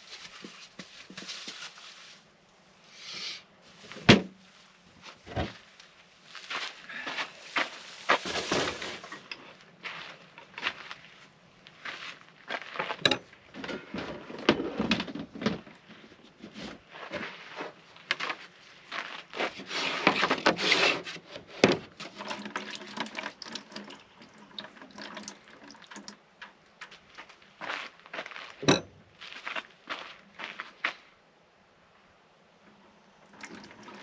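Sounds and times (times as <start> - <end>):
liquid pouring and sloshing: 21.9 - 26.2, 33.2 - 34.0.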